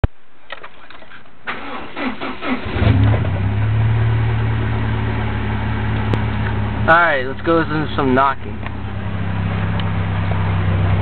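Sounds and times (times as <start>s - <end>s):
car engine idling: 0.5s - 11.0s
starter motor cranking: 0.8s - 3.2s.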